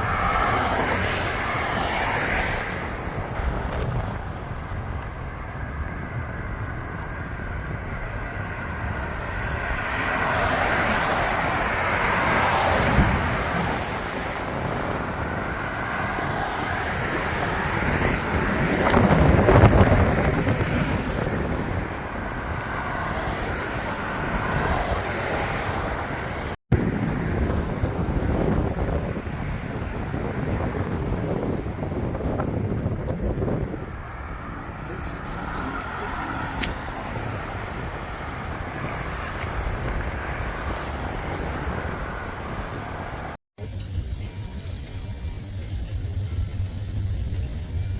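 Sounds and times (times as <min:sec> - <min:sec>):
road traffic: 0:00.0 - 0:47.9
vehicles passing: 0:00.0 - 0:47.9
wind rumble on microphone: 0:00.0 - 0:47.9.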